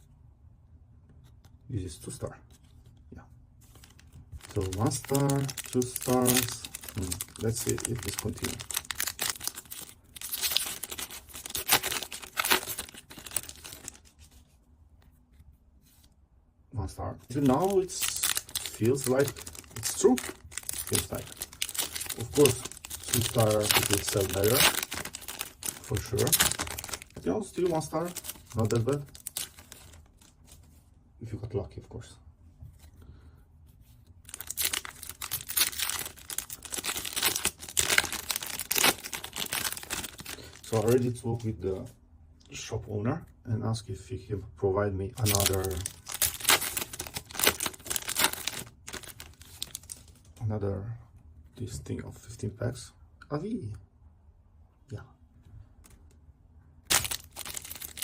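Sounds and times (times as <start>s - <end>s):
foil pack tearing and crinkling: 4.4s - 14.1s, 17.3s - 30.3s, 34.3s - 41.0s, 45.2s - 50.1s, 56.9s - 58.0s.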